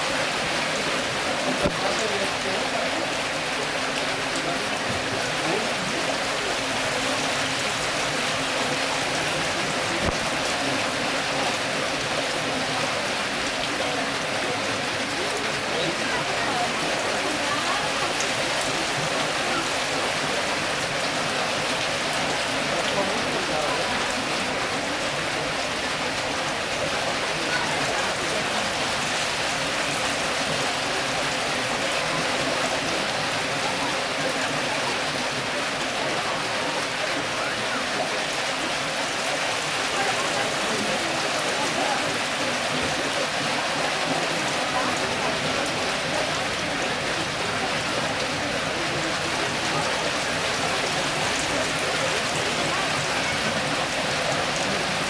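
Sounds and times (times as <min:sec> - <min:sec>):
rushing stream water: 0:00.0 - 0:55.0.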